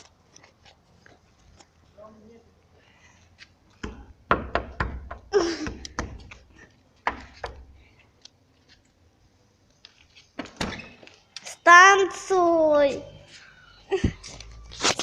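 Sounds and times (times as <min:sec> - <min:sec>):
knocks and thumps: 0:03.8 - 0:06.3.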